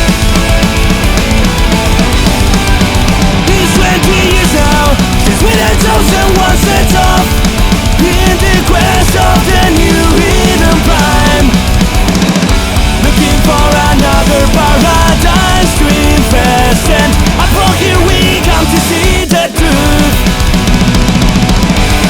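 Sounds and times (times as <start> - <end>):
distorted guitars: 0.0 - 22.0
fast drums: 0.0 - 22.0
person singing: 3.2 - 11.8, 12.9 - 20.5.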